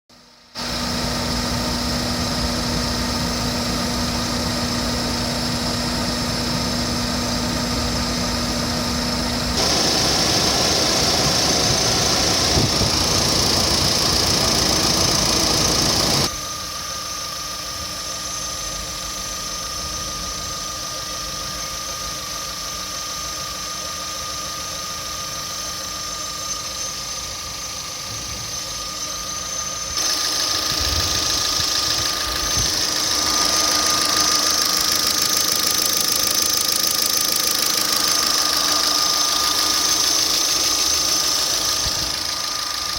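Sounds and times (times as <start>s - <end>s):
engine running: 0.2s - 42.9s
air conditioner running: 0.4s - 21.2s
high-pitched whistling ring: 11.2s - 42.9s.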